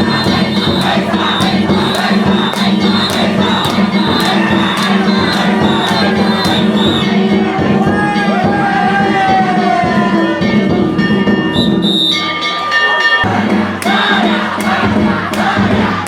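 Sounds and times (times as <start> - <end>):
hand gongs ringing: 0.0 - 7.1
drum: 0.0 - 11.8, 13.3 - 16.0
crowd voices: 0.0 - 16.0.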